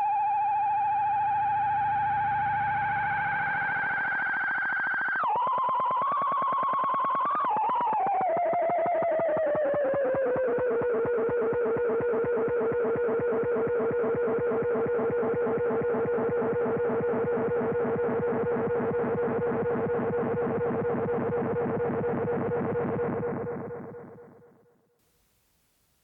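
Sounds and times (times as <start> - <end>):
analog delay self-oscillating tone: 10.3 - 24.6.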